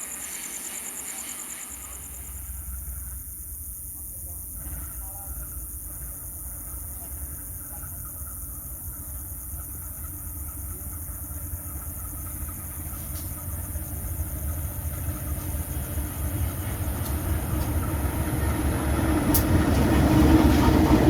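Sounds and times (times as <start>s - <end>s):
diesel locomotive rumble: 4.4s - 21.0s.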